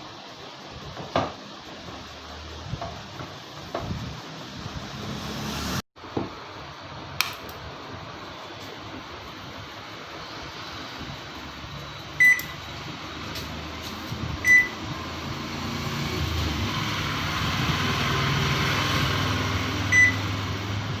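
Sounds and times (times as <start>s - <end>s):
microwave oven humming: 6.1s - 21.0s
microwave oven beeping: 11.0s - 15.2s, 19.8s - 21.0s.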